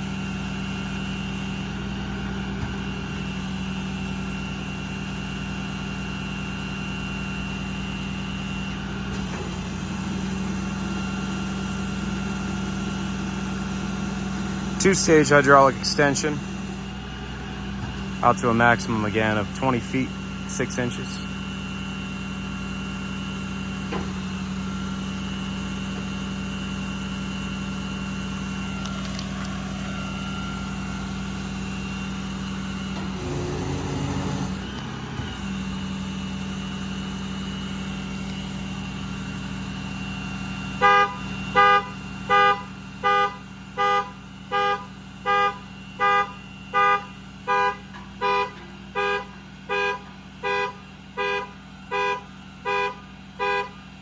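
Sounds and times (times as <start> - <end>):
crane truck hydraulic hum: 0.0 - 54.0
electronic warning beeper: 13.5 - 21.3.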